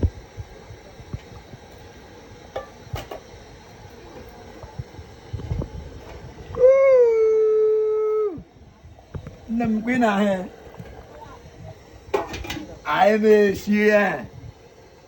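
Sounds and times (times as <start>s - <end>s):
loud steady howl: 0.0s - 15.0s.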